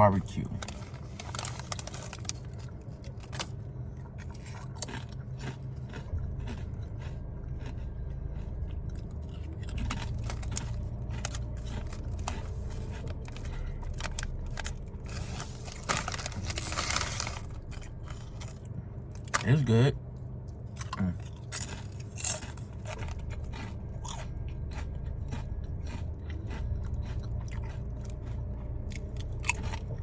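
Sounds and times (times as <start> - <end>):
steady low hum: 0.0 - 30.0
person crunching potato chips: 0.6 - 19.6, 20.7 - 30.0.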